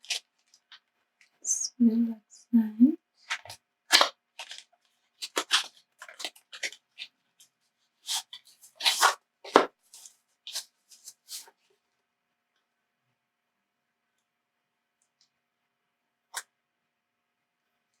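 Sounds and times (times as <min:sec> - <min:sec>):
packaging crinkling and rustling: 0:00.0 - 0:00.8, 0:03.3 - 0:07.1, 0:08.1 - 0:11.5.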